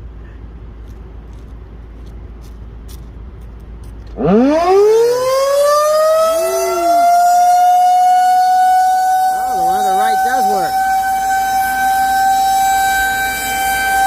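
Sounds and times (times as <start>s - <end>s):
low background rumble: 0.0s - 4.2s
warning siren winding up: 4.2s - 14.0s.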